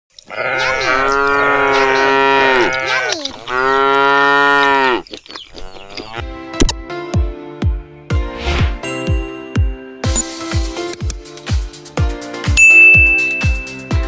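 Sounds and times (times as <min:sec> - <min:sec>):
cow mooing: 0:00.3 - 0:06.3.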